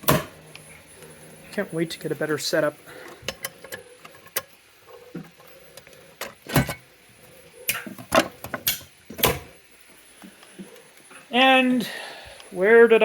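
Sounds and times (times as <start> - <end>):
tools clicking and knocking: 3.1 - 4.5, 7.7 - 9.5.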